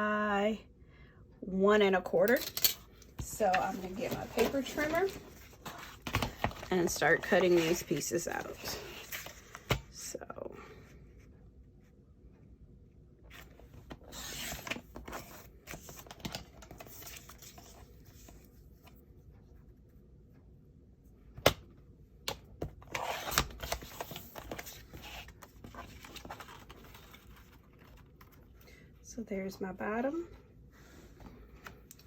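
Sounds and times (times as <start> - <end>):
paper handling: 3.2 - 9.8, 22.9 - 28.5.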